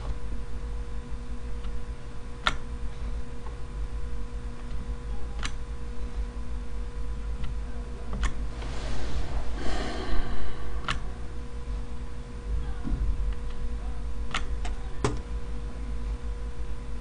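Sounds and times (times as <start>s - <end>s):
steady electrical hum: 0.0s - 17.0s
breathy exhale: 8.4s - 12.3s.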